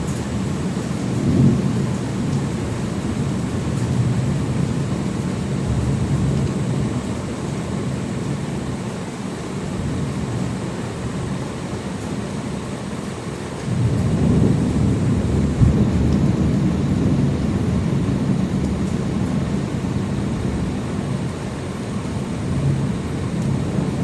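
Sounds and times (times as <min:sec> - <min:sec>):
thunder rumbling: 0:00.0 - 0:06.4, 0:13.7 - 0:24.0
rain hiss: 0:00.0 - 0:24.0.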